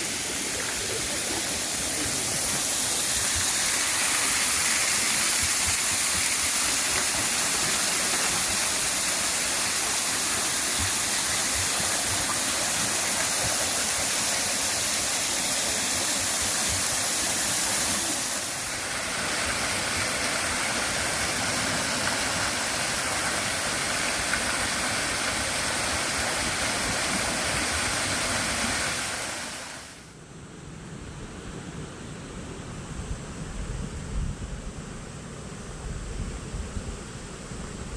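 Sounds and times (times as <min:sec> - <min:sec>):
stream and waterfall rushing: 0:00.0 - 0:30.2.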